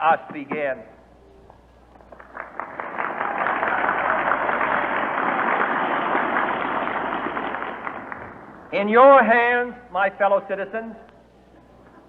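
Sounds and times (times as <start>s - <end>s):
large crowd applauding: 2.1s - 8.7s.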